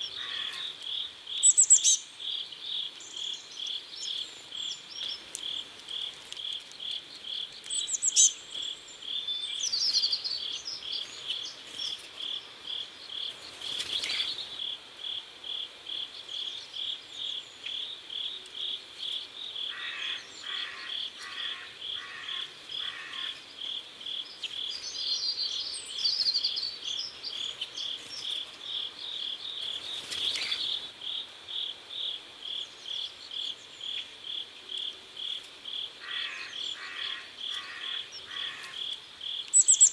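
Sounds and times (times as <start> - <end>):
high twittering calls: 0.0 - 14.8, 36.0 - 39.9
crickets chirping: 0.0 - 39.9.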